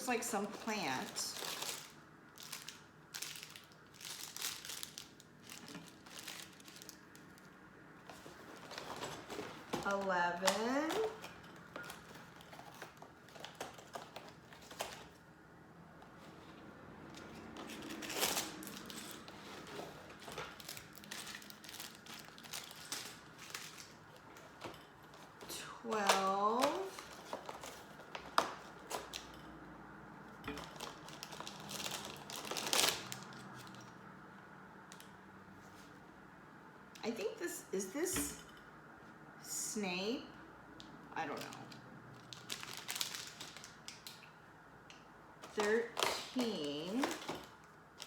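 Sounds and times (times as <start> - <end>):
packaging crinkling: 0.4 - 7.5, 8.1 - 15.2, 17.2 - 29.3, 30.5 - 33.9, 41.4 - 44.3, 45.4 - 48.0.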